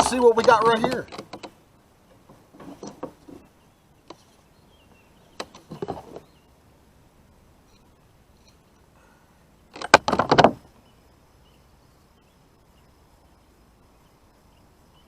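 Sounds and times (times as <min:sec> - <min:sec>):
faint bird chirp: 0:02.8 - 0:09.7, 0:10.7 - 0:15.0.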